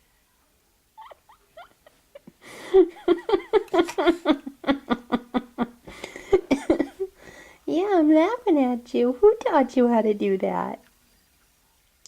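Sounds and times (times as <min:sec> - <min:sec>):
person laughing hard: 0:01.0 - 0:07.2.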